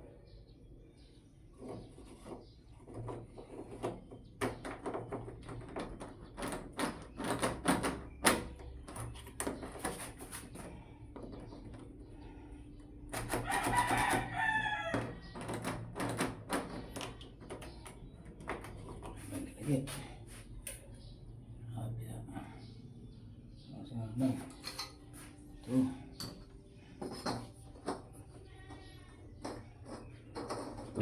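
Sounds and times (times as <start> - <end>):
rooster crowing: 13.4 - 15.1.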